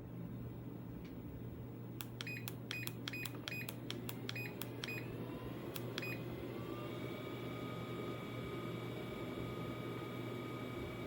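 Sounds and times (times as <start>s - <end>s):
motor whine rising in pitch: 4.7s - 11.0s.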